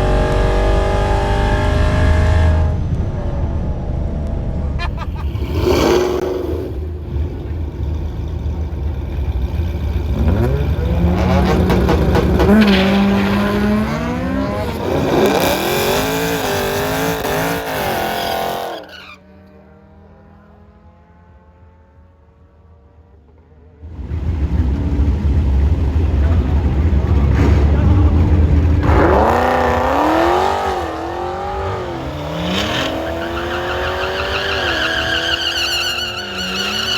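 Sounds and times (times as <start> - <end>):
engine running hard: 0.0 - 16.9, 23.9 - 32.3.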